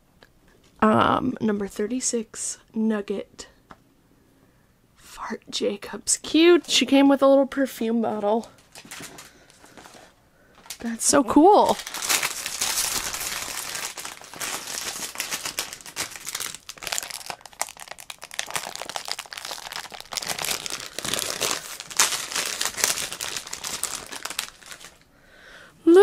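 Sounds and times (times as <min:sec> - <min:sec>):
packaging crinkling and rustling: 0:08.4 - 0:10.9, 0:11.5 - 0:25.1.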